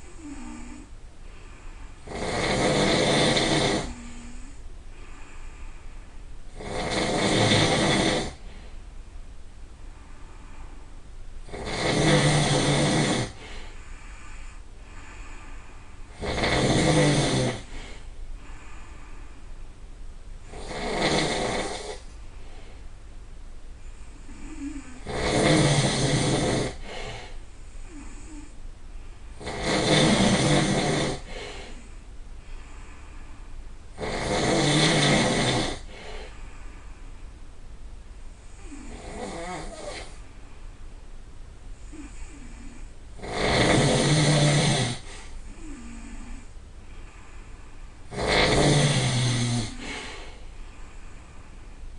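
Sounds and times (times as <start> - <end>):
person snoring loudly: 0.0 - 0.9, 2.0 - 4.6, 6.5 - 8.4, 11.4 - 13.6, 16.1 - 18.0, 20.5 - 22.1, 24.2 - 27.3, 29.4 - 31.8, 33.9 - 36.4, 38.6 - 40.2, 41.8 - 46.5, 48.1 - 50.4
quiet breaths: 0.0 - 51.9.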